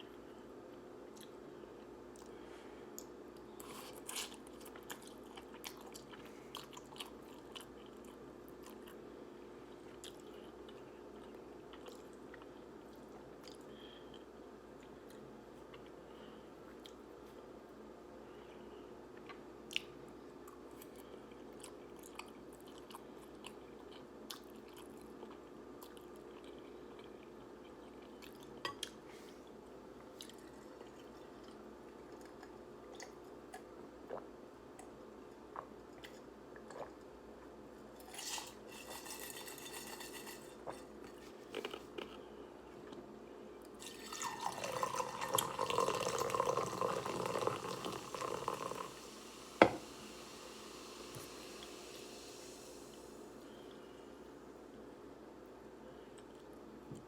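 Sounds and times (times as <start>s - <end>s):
person eating noodles: 3.5s - 9.0s.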